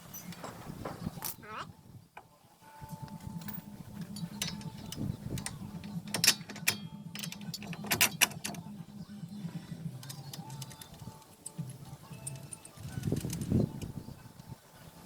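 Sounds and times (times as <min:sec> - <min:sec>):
metallic clicks of hand tools: 0:04.2 - 0:08.6, 0:10.0 - 0:14.0.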